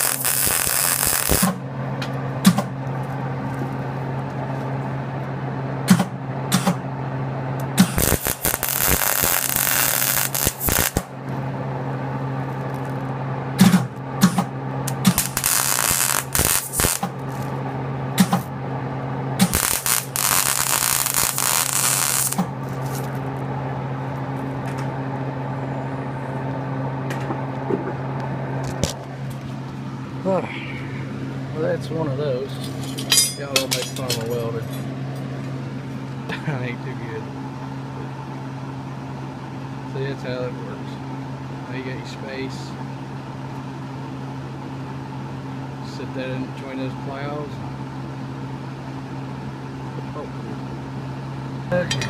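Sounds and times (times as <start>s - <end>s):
crackling welding arc: 0.0s - 1.6s, 7.8s - 11.1s, 14.9s - 17.4s, 19.4s - 23.1s
welder humming: 0.0s - 40.2s.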